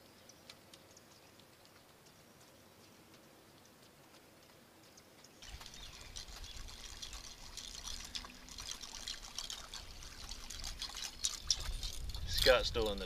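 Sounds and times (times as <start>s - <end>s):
water splashing and trickling: 5.2s - 13.0s.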